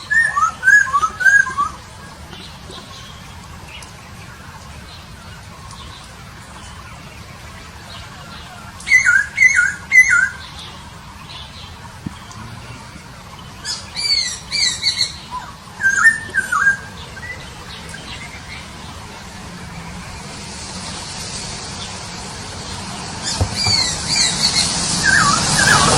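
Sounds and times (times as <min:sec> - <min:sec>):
songbird singing slurred whistles: 0:00.0 - 0:01.8, 0:07.9 - 0:10.5, 0:13.6 - 0:18.7, 0:23.2 - 0:25.9.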